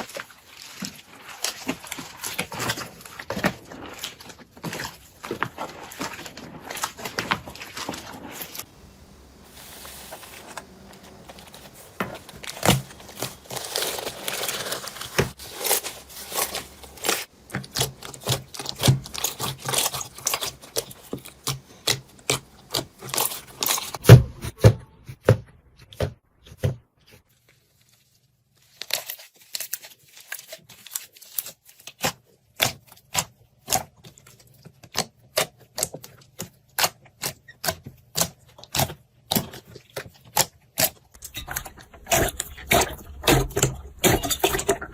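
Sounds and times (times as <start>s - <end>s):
hissy squelch of slime: 0.0s - 24.0s.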